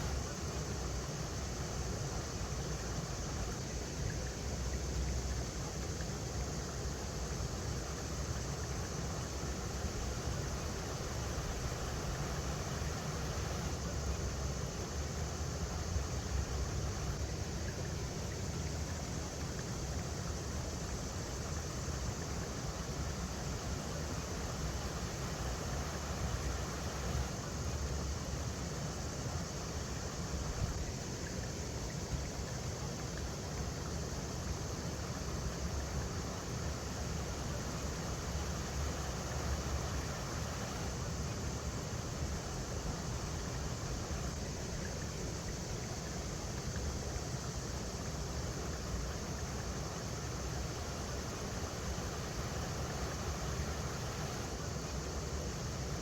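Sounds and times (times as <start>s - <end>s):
river water flowing over rocks: 5.2s - 56.0s.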